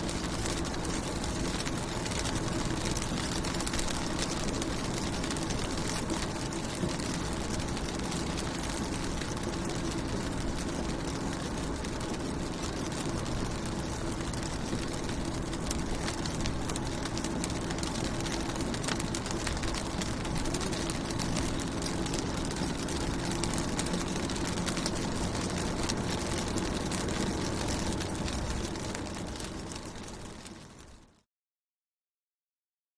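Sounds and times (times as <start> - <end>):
low steady hum: 0.0 - 31.2
rain on car window: 0.0 - 31.2.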